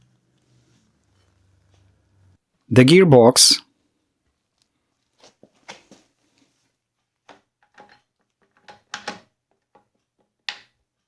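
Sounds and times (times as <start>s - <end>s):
metallic clicks and clunks: 7.4s - 10.8s.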